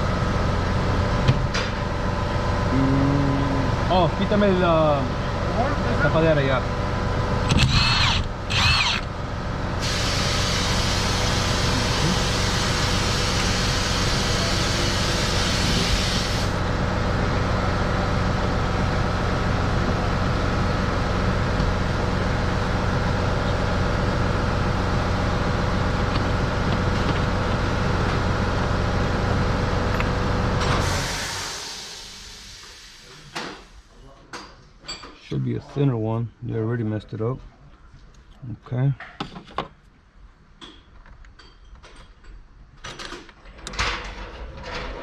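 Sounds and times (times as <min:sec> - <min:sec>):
steady mechanical hum: 0:00.0 - 0:45.0
short rising and falling squeaks: 0:07.5 - 0:09.1
loud hiss: 0:09.8 - 0:16.6, 0:30.7 - 0:33.8.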